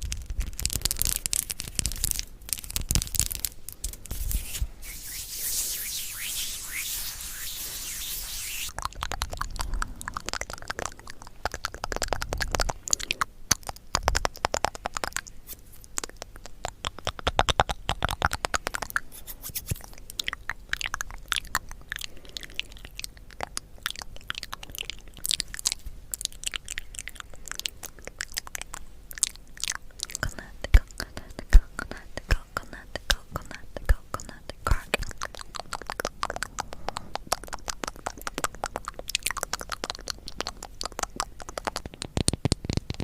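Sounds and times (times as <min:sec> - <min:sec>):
candy crunching: 0:00.0 - 0:04.9.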